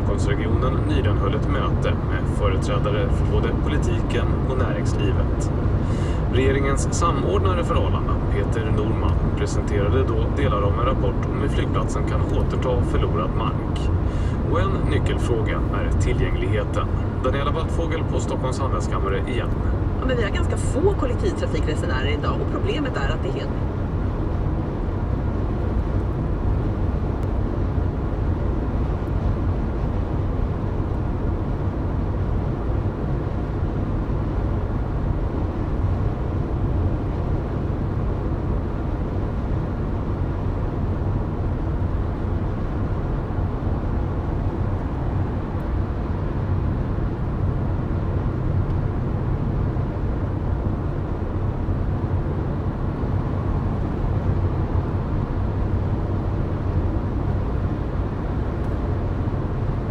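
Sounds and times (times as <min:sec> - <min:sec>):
car cabin road noise: 0:00.0 - 0:59.9.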